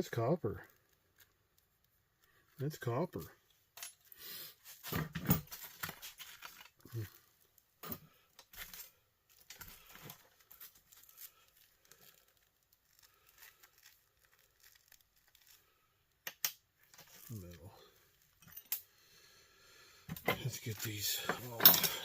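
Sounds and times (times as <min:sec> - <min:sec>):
plastic and wire rustling and tearing: 0:00.6 - 0:02.7, 0:03.5 - 0:18.5.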